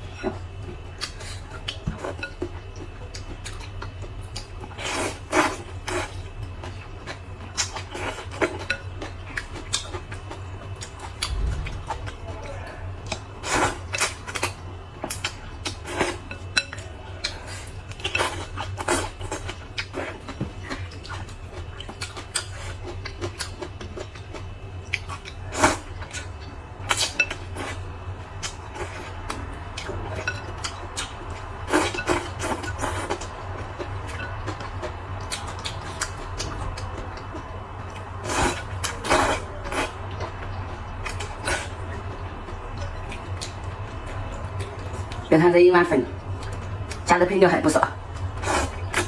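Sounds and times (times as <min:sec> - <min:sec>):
low steady hum: 0:08.3 - 0:19.6.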